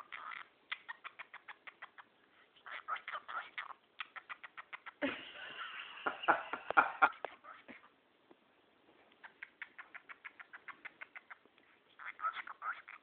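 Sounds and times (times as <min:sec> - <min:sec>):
cockatiel chirping: 0:00.0 - 0:05.0, 0:07.1 - 0:07.9, 0:09.2 - 0:13.0.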